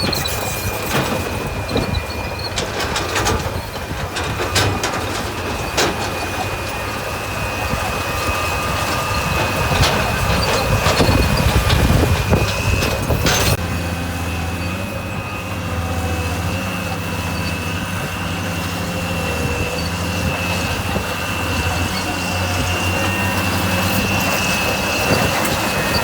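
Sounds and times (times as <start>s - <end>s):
clattering and knocks: 0.0s - 6.8s
diesel engine running: 0.0s - 26.0s.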